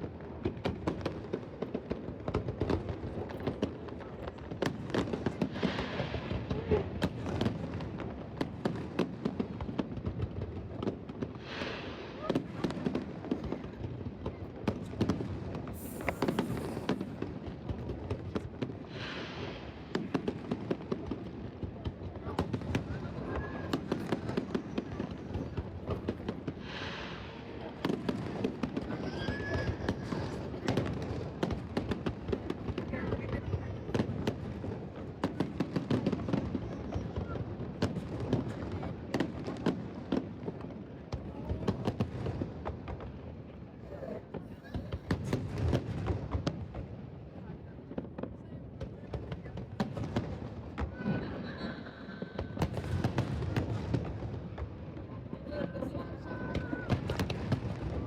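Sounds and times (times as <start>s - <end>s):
fireworks bangs and crackles: 0.0s - 58.0s
rushing crackling hiss: 15.7s - 17.4s
high hiss: 15.8s - 17.0s.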